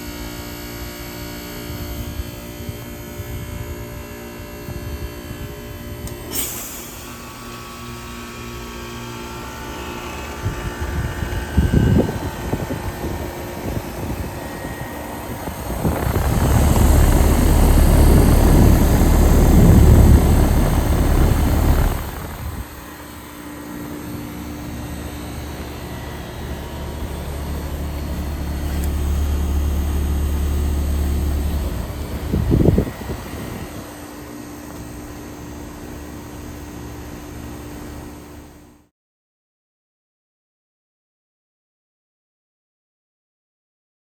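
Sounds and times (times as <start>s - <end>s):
heat pump compressor humming: 0.0s - 38.6s
loud rushing noise: 10.5s - 22.9s.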